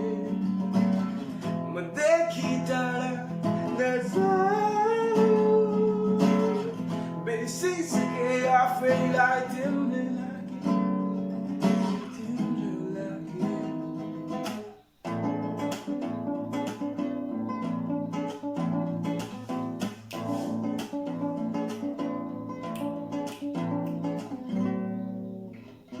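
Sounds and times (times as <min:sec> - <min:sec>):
acoustic guitar plucked and strummed: 0:00.0 - 0:26.0.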